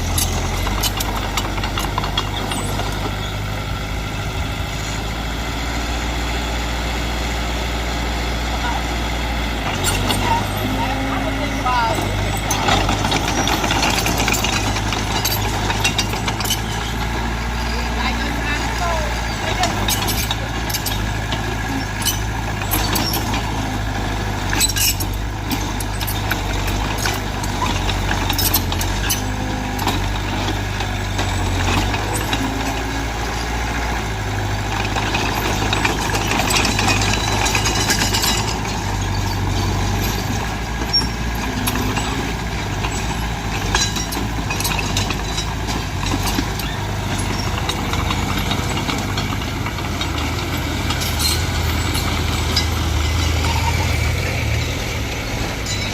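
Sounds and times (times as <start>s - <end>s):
diesel machinery engine drone: 0.0s - 55.9s
metallic clinks and knocks: 35.0s - 54.8s.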